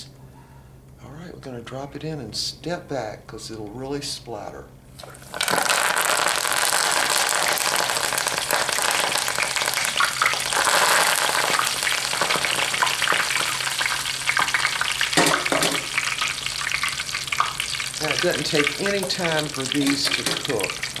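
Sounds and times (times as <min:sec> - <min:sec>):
deep frying sizzling and crackling: 0:04.9 - 0:21.0.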